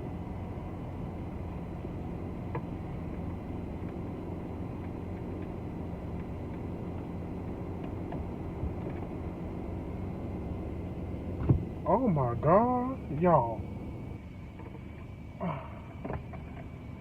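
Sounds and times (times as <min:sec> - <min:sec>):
car engine humming: 0:00.0 - 0:17.0.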